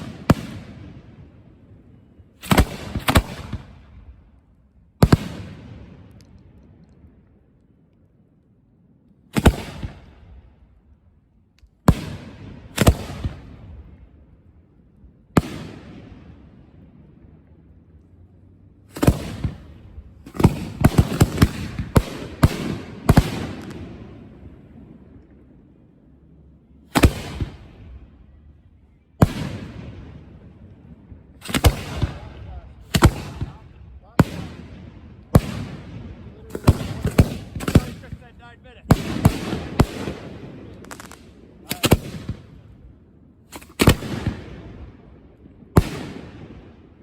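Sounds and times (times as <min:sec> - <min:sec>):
echoing rumble: 0:12.1 - 0:47.0
firework shells booming: 0:18.9 - 0:25.4, 0:29.2 - 0:42.8.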